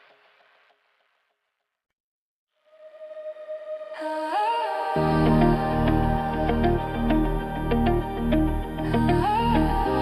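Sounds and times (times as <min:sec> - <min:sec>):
soft chill electronic music: 0:02.8 - 0:10.0.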